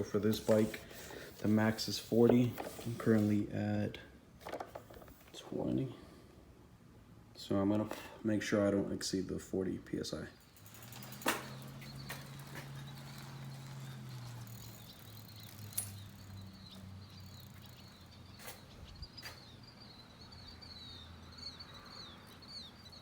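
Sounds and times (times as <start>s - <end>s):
small birds chirping: 10.1s - 23.0s.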